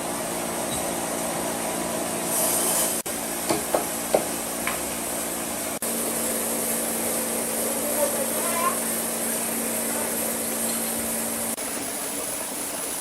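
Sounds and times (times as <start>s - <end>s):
sawmill machinery running: 2.9s - 11.6s.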